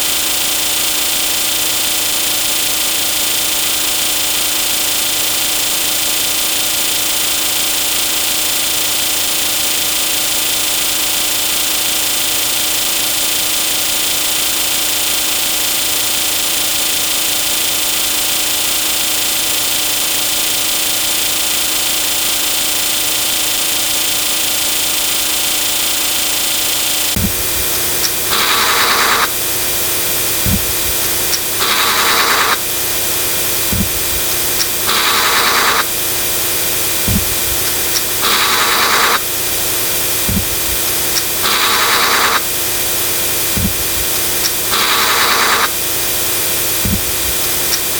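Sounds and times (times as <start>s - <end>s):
steady hum with hiss: 27.0s - 47.9s.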